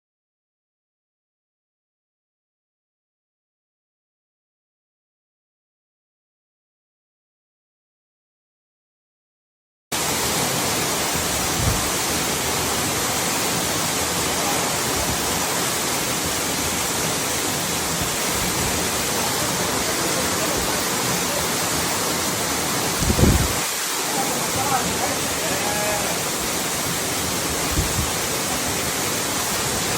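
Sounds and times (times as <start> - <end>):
waterfall rushing: 10.0 - 29.9.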